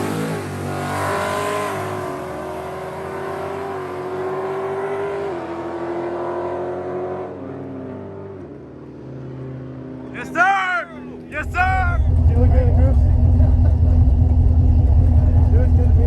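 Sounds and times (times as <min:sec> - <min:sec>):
car engine droning: 0:00.0 - 0:16.0.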